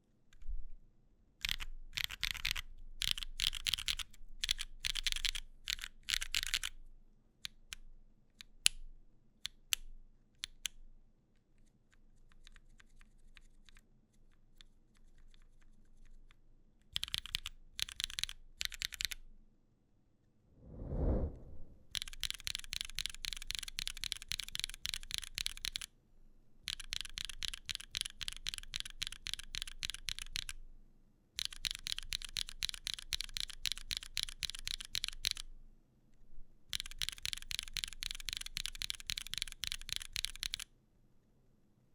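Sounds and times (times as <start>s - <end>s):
fast typing on mechanical keyboard: 1.4s - 6.7s, 17.0s - 19.2s, 22.0s - 25.9s, 26.7s - 30.6s, 31.4s - 35.4s, 36.7s - 40.6s.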